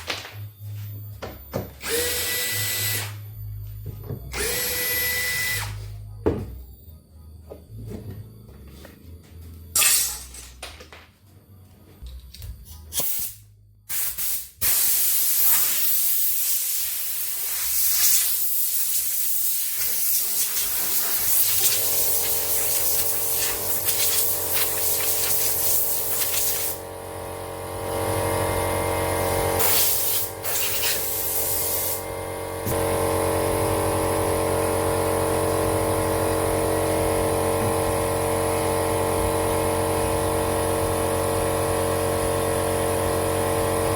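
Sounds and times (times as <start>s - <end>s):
motor humming: 4.3s - 5.8s.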